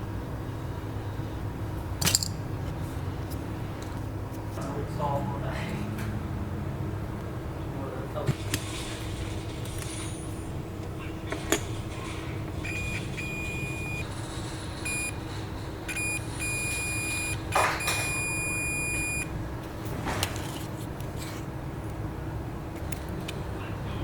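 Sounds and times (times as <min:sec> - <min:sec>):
electronic beeper beeping: 0:12.7 - 0:14.0, 0:14.9 - 0:15.1, 0:15.9 - 0:19.3
faint steady hum: 0:14.8 - 0:19.5.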